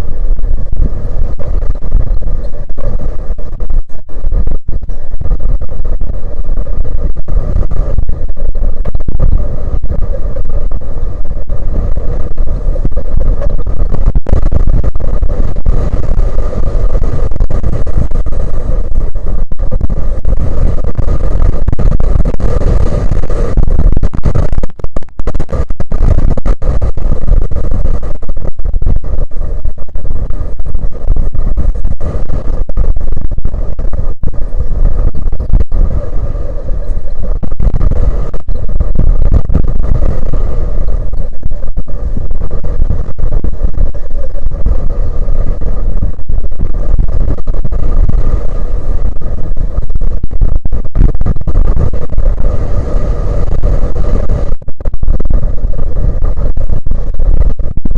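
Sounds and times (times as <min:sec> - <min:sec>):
wind buffeting microphone: 0:37.5 - 0:41.3.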